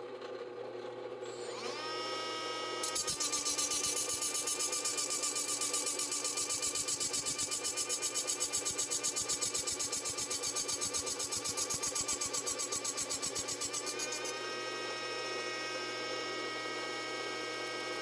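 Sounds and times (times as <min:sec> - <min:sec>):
grinder pulsing against shaft: 0:02.8 - 0:14.5.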